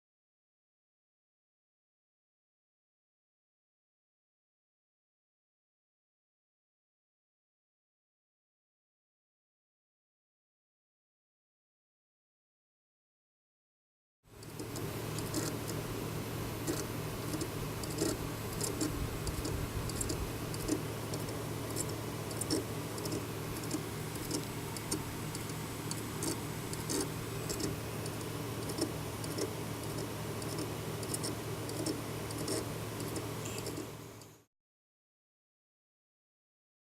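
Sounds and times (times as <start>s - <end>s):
hard drive clicking ticks: 14.3s - 34.4s
hard drive humming: 14.3s - 34.5s.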